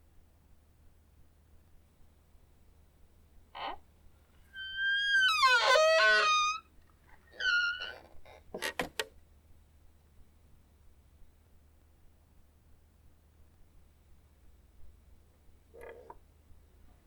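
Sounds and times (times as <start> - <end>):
door hinge creaking: 4.6 - 6.6, 7.4 - 8.0.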